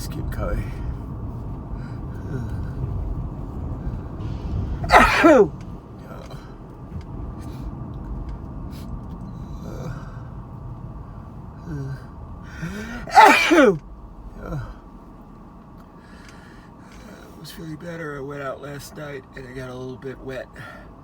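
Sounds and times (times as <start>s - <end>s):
short catching breath: 4.8s - 5.5s, 11.8s - 13.8s, 15.9s - 17.4s
person sneezing: 4.9s - 5.5s, 12.9s - 13.8s.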